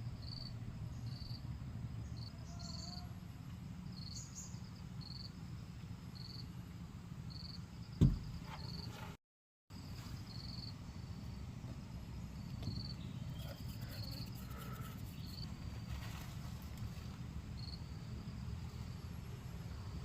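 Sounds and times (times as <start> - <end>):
insects chirping: 0.0 - 8.9, 9.7 - 20.0.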